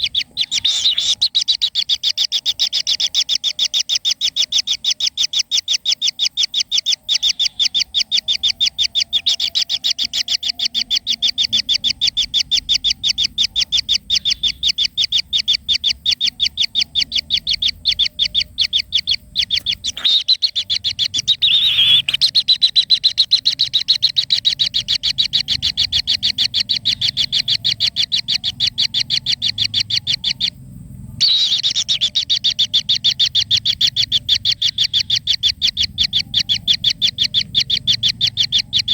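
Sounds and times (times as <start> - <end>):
loud falling bird call: 0.0 - 1.6, 19.0 - 23.2, 31.2 - 32.1
bird chirping rapidly: 0.0 - 30.6, 31.2 - 38.9.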